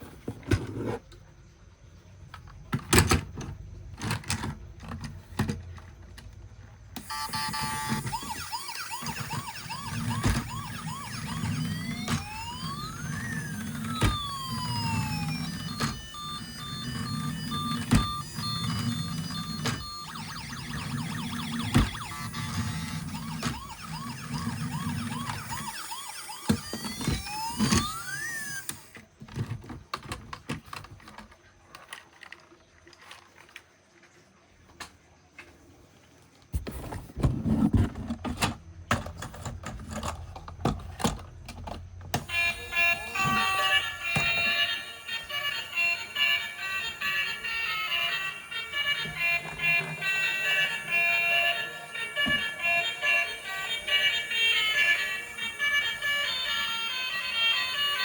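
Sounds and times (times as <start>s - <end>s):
beeping tones: 7.0s - 28.7s
electronic siren wails: 7.0s - 28.9s, 42.2s - 58.0s.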